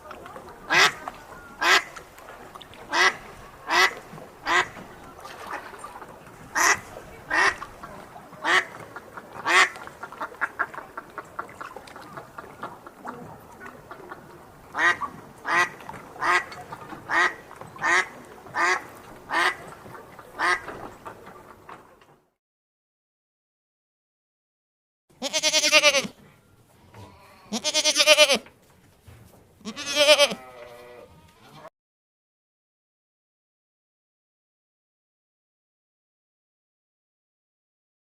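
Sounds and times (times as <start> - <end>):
duck quacking: 0.7 - 1.0, 1.6 - 2.0, 2.9 - 4.8, 6.5 - 7.7, 8.4 - 8.8, 9.4 - 10.8, 14.8 - 19.6, 20.4 - 20.7.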